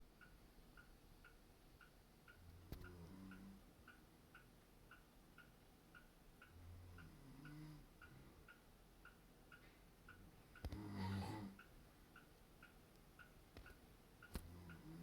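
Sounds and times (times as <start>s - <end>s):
clock ticking: 0.0s - 15.0s
faint low snores: 2.5s - 3.6s, 6.5s - 8.5s, 10.2s - 11.6s, 14.4s - 15.0s.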